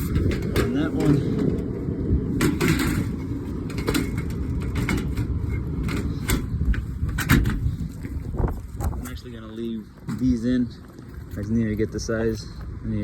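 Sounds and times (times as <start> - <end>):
knocks and rattles of filters: 0.0 - 1.6, 2.3 - 9.1
steady low rumble: 0.0 - 13.0.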